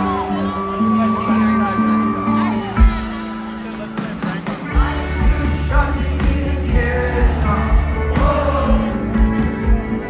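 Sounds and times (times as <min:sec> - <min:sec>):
rock band playing live: 0:00.0 - 0:10.0
man singing: 0:04.4 - 0:09.5.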